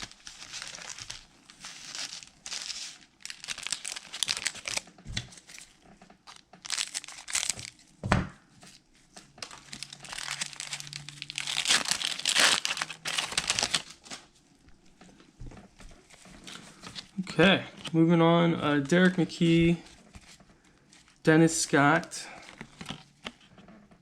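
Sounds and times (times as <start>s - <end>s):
card pack wrappers crinkling and tearing: 0.0s - 7.9s, 9.4s - 14.3s.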